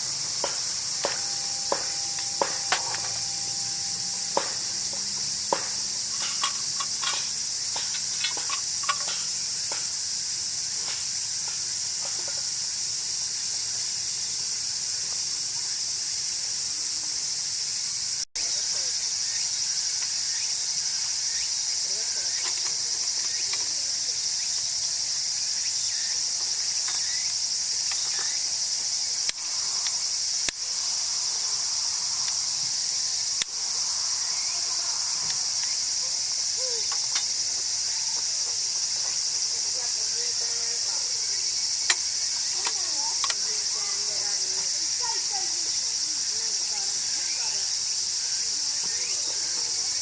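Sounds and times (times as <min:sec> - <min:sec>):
crickets and insects trilling: 0:00.0 - 0:50.0.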